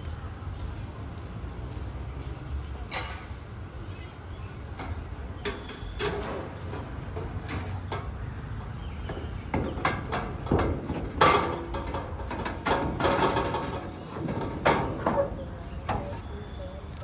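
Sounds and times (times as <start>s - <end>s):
low rumble of street noise: 0.0s - 17.0s
sharp knocks and clatter: 4.7s - 16.3s.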